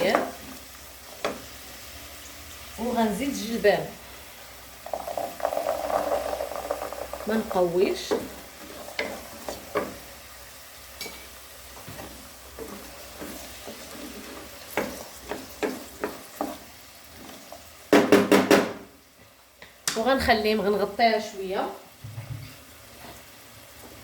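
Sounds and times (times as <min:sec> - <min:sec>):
spoon scraping and knocking pan: 0:00.0 - 0:01.5, 0:04.8 - 0:10.2, 0:11.0 - 0:18.8
vegetables sizzling in oil: 0:00.0 - 0:24.0.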